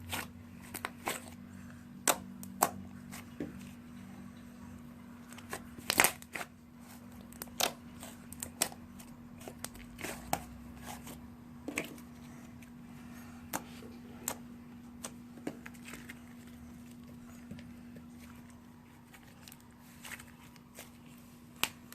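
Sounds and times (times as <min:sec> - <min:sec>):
slime popping and crackling: 0:05.4 - 0:06.5.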